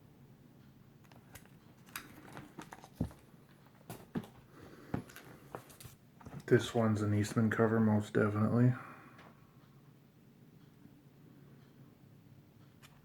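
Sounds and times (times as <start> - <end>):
plastic sleeves rustling: 1.2 - 6.6.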